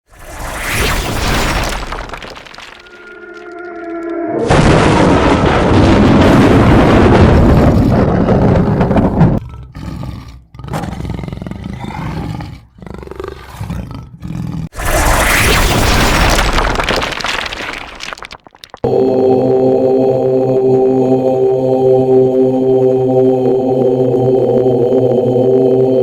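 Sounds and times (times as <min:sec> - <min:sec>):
loud roaring: 0:01.6 - 0:12.6.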